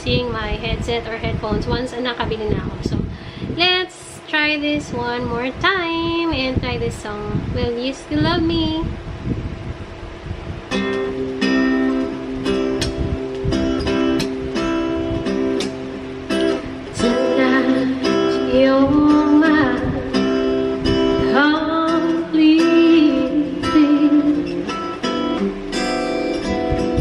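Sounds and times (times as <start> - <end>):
woman singing: 0.0 - 9.0, 16.9 - 20.5, 21.1 - 24.8
acoustic guitar backing track: 0.0 - 27.0.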